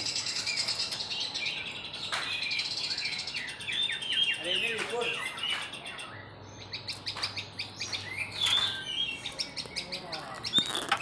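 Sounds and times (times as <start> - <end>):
bird chirping and whistling: 0.0 - 11.0.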